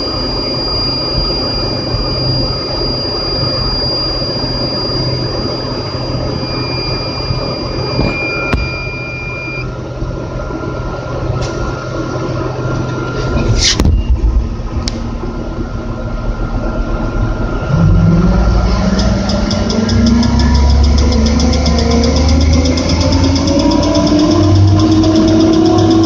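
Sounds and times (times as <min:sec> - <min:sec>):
high alarm beep: 0:00.0 - 0:09.8, 0:16.7 - 0:26.0
crane engine running: 0:00.0 - 0:26.0
sharp clicks: 0:18.9 - 0:26.0.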